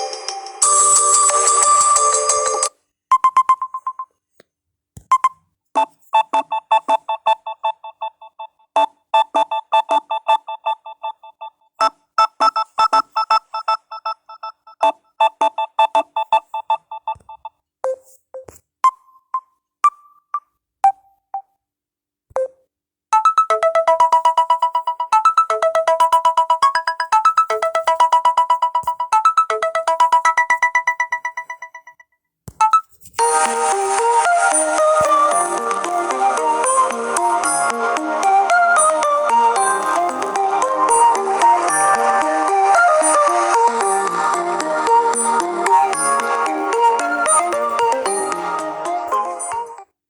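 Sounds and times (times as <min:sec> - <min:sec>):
phone ringtone melodies: 0:00.0 - 0:04.0, 0:23.2 - 0:32.0, 0:32.6 - 0:49.8.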